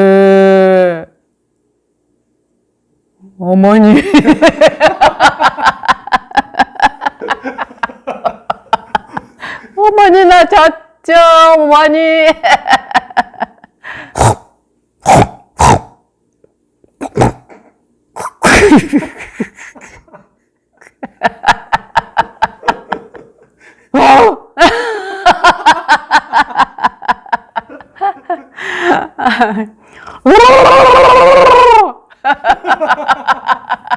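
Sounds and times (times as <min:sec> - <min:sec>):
person imitating animal calls: 0:00.0 - 0:01.1, 0:17.0 - 0:17.6, 0:18.2 - 0:18.6.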